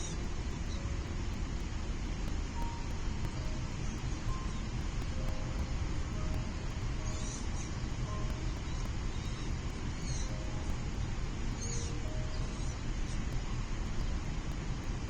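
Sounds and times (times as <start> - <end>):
background rumble: 0.0 - 15.0
high-pitched bird chirps: 7.0 - 10.6, 11.6 - 12.8.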